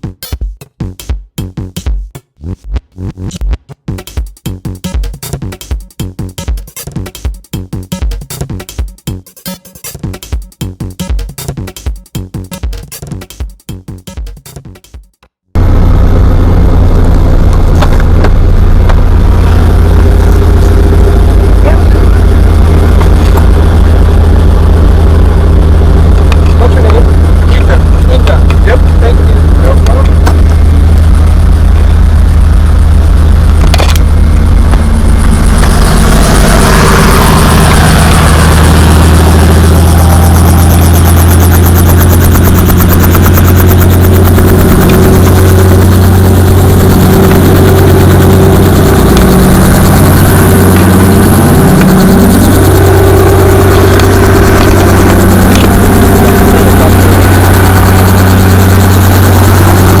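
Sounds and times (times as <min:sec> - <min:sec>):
helicopter engine and rotor: 0:15.6 - 1:00.0.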